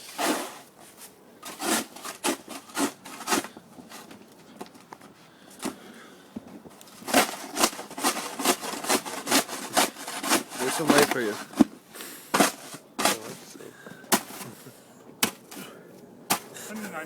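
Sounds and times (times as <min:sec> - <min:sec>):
crunching scrapes in snow: 0:00.0 - 0:04.6, 0:06.8 - 0:13.6.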